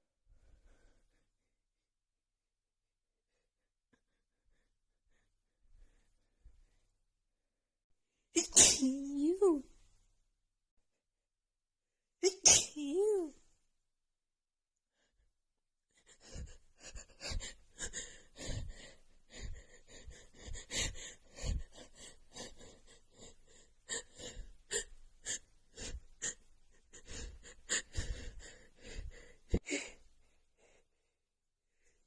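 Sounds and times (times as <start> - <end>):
woman gasping and sniffling: 15.9 - 30.8.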